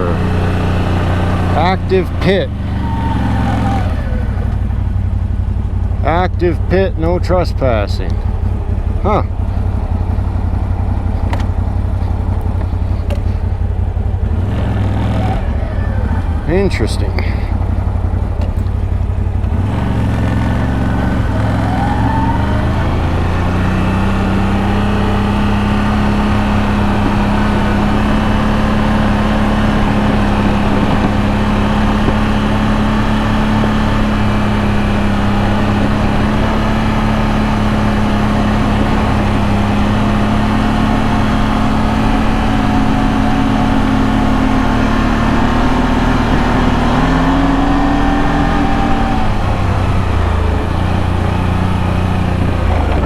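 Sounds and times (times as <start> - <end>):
atv engine running: 0.0 - 53.0.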